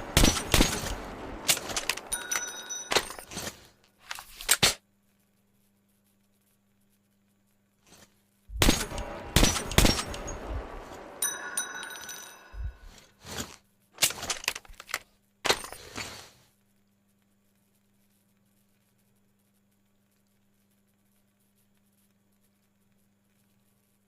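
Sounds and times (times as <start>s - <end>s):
metallic ringing tones: 2.1s - 3.4s, 8.7s - 13.1s.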